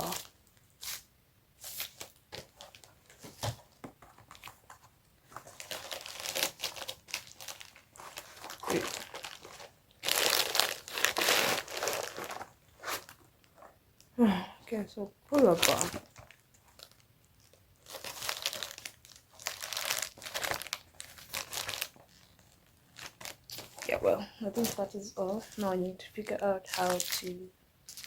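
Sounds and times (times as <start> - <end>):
packaging crinkling and tearing: 5.3 - 13.6, 15.3 - 25.6, 26.6 - 27.3.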